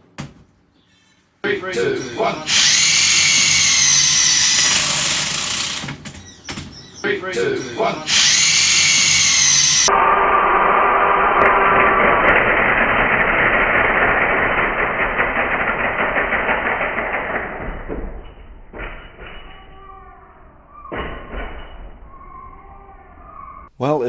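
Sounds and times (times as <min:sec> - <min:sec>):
impact wrench motor whining: 0:02.5 - 0:06.0, 0:08.1 - 0:09.9, 0:10.6 - 0:17.6
impact wrench hammering: 0:02.5 - 0:06.2.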